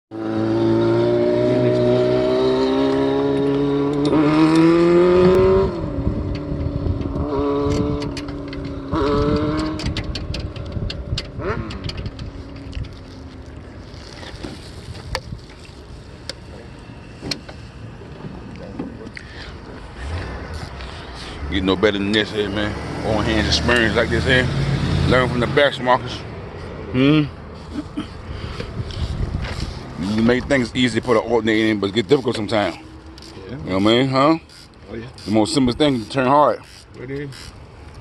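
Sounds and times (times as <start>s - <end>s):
engine whining: 0.1s - 27.6s
sharp clicks and knocks: 6.3s - 13.0s.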